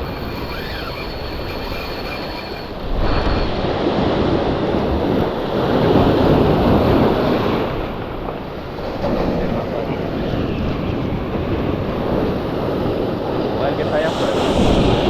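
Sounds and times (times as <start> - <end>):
faint high whine: 0.0 - 3.8
surf rushing: 0.0 - 15.0
wind on microphone: 0.0 - 15.0.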